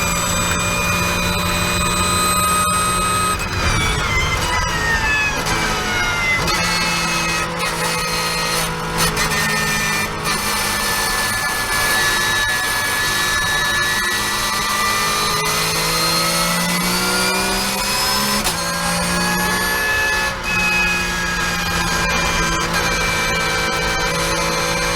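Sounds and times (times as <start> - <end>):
race car engine running hard: 0.0 - 24.9.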